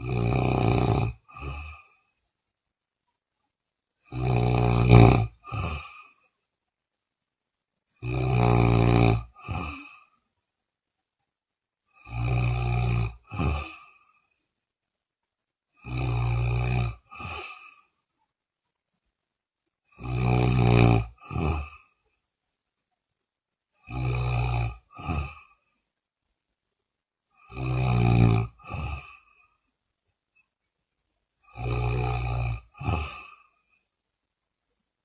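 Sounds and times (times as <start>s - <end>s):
woman snoring: 0.0s - 2.1s, 4.0s - 6.3s, 7.9s - 10.2s, 11.9s - 14.4s, 15.7s - 18.0s, 19.9s - 22.1s, 23.8s - 25.7s, 27.3s - 29.6s, 31.4s - 33.8s.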